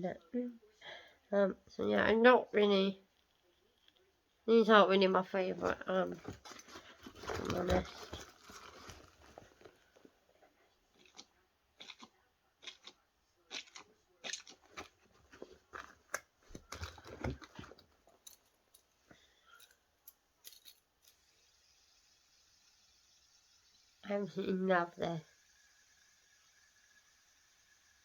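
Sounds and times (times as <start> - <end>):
plastic toys clicking and rustling: 6.1 - 9.6.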